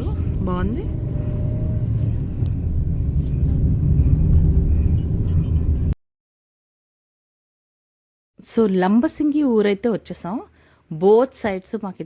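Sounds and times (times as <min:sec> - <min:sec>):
car engine and road noise: 0:00.0 - 0:06.0.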